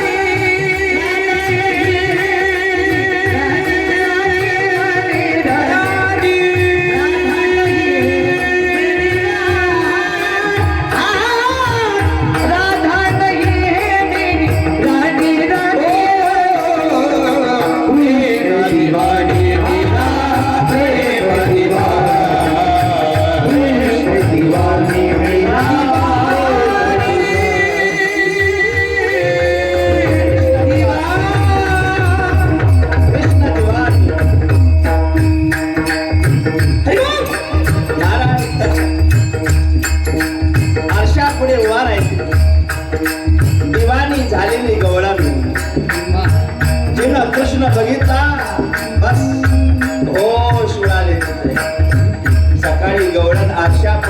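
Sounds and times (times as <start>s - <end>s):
person singing: 0.0s - 34.5s
steady drumming: 0.0s - 54.0s
sustained instrumental notes: 5.2s - 54.0s.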